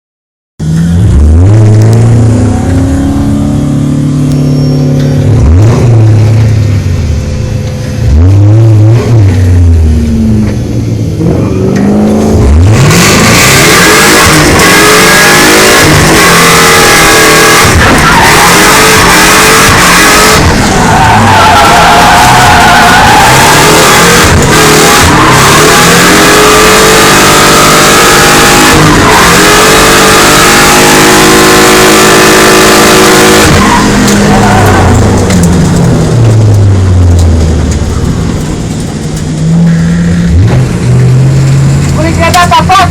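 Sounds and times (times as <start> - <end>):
car engines revving hard: 0.6 - 42.9
tyres squealing: 13.8 - 29.9.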